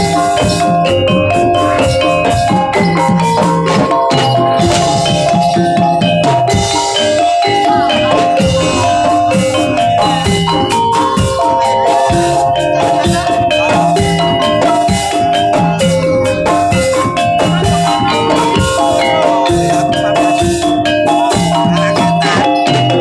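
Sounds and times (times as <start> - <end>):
drums: 0.0 - 23.0
gamelan metal percussion: 0.0 - 23.0.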